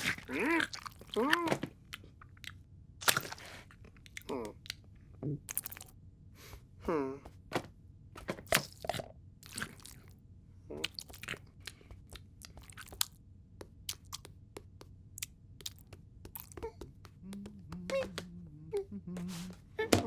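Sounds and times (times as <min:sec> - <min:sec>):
low hum-like voiced sound: 0:04.2 - 0:05.5, 0:06.4 - 0:07.6, 0:10.5 - 0:12.0, 0:16.4 - 0:20.0
crisp crunching clicks and taps: 0:11.7 - 0:18.3.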